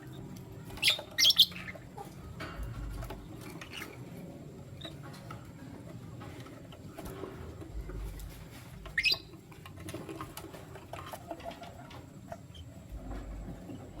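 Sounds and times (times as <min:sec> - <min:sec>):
bird chirp: 0:00.0 - 0:02.1, 0:08.9 - 0:09.4.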